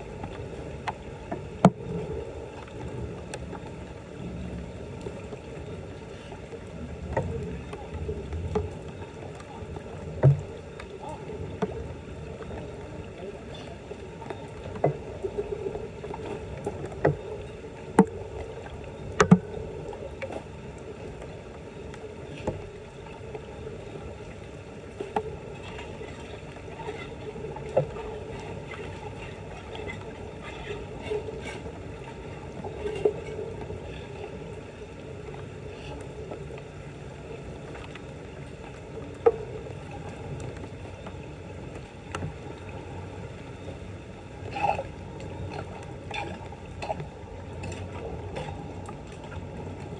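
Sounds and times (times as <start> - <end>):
floodwater sloshing and splashing: 0.0 - 49.9.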